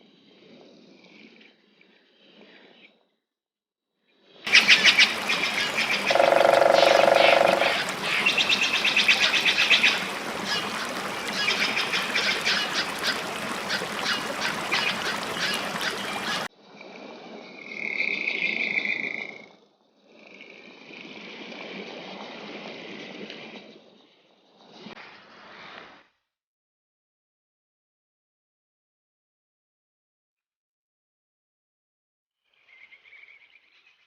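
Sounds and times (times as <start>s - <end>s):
pulsing animal calls: 4.5s - 11.5s
steady high tone: 6.1s - 7.9s.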